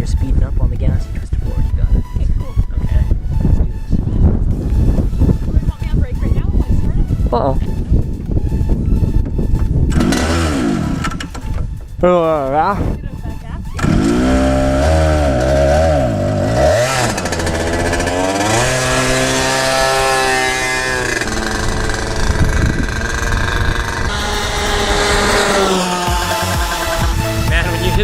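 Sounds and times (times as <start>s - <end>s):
go-kart engine revving: 9.9s - 11.4s, 13.8s - 28.0s.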